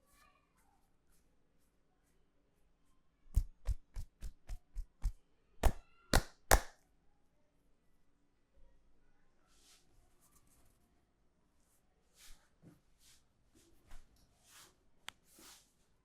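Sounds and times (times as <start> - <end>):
hands slapping in head massage: 3.4 - 6.7.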